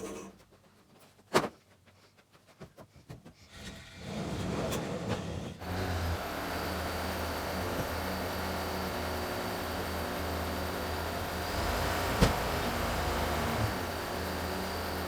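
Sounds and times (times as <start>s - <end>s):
machine motor humming: 5.6s - 15.0s.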